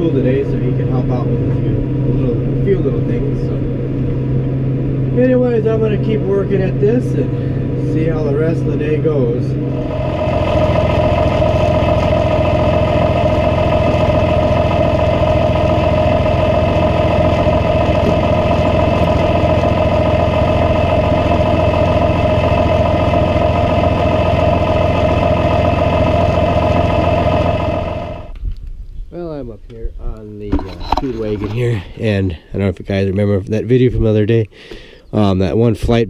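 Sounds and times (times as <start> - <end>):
diesel engine running: 0.0 - 28.4.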